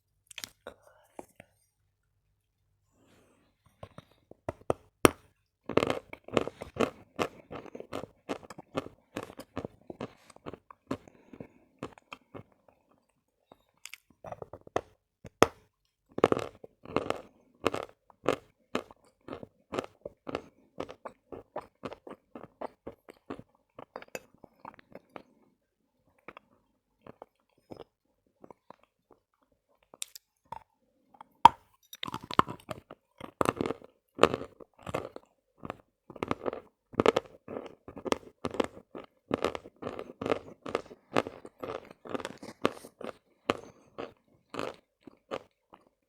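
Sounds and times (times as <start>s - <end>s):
chalk crunching while chewed: 5.7s - 13.2s, 13.8s - 25.2s, 32.0s - 46.0s.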